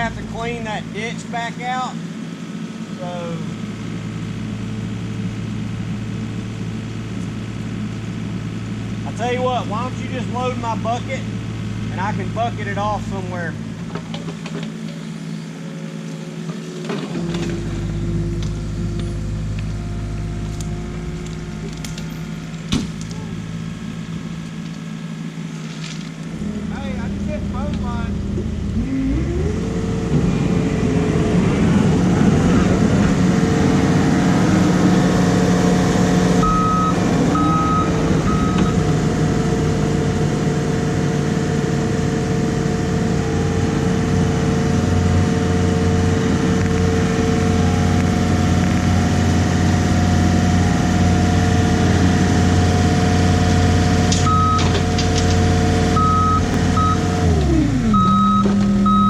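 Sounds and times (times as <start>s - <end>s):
diesel engine revving: 0.0s - 59.0s
backup alarm beeping: 36.4s - 39.1s, 54.2s - 54.8s, 55.9s - 59.0s.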